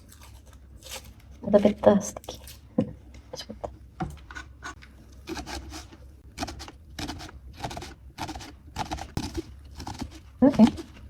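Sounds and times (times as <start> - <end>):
knife slicing onion on board: 4.4 - 11.0.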